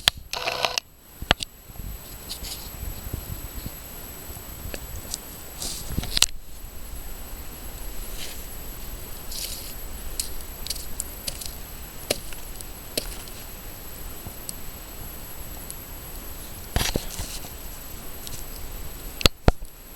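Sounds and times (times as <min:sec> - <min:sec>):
wood fire crackling: 0:01.1 - 0:19.9
fire pops and snaps: 0:03.6 - 0:06.5, 0:08.5 - 0:15.9, 0:16.6 - 0:19.8.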